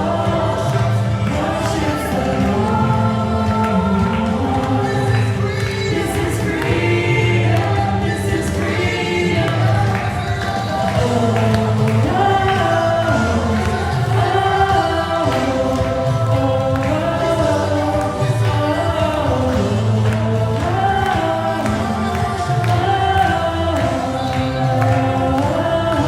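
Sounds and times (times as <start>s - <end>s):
worship band with singing: 0.0s - 26.0s.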